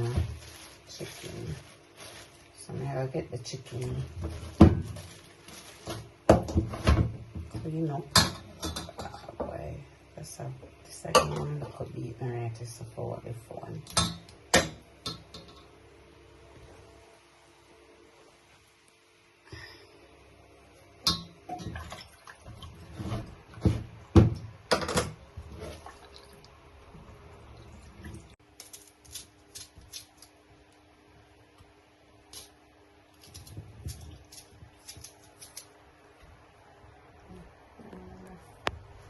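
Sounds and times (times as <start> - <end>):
water splashing: 21.6 - 22.9, 25.6 - 28.4
knocks against a sink: 23.6 - 25.2.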